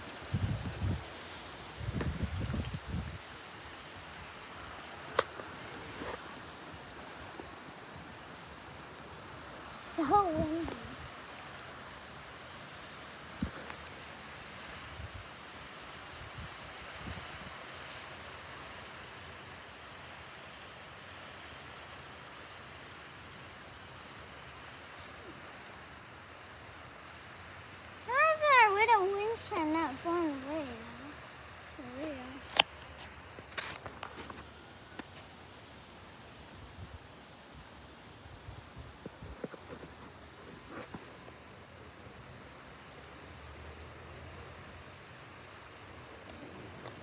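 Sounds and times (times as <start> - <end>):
wind buffeting microphone: 0.0 - 4.4
gusty wind blowing: 0.0 - 6.2, 13.2 - 17.7.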